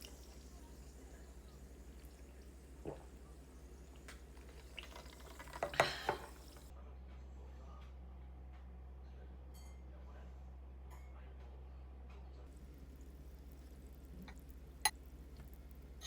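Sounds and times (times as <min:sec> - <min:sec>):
liquid sound: 0:00.0 - 0:06.7, 0:12.5 - 0:16.0
low steady hum: 0:00.0 - 0:06.8, 0:11.6 - 0:16.0
dishes clinking: 0:04.4 - 0:06.7.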